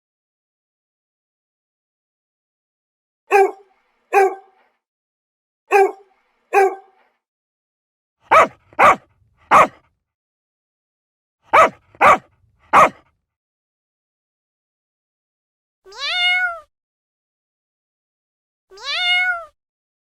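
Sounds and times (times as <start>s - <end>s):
dog barking: 3.3s - 4.6s, 5.7s - 7.0s, 8.3s - 9.8s, 11.5s - 13.0s.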